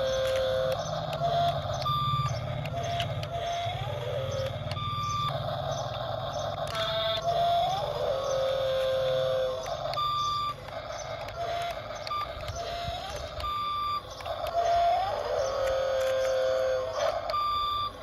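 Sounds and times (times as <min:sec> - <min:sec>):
electric motor and gears whine: 0:00.0 - 0:18.0
reversing beeper short beeps: 0:17.2 - 0:18.0.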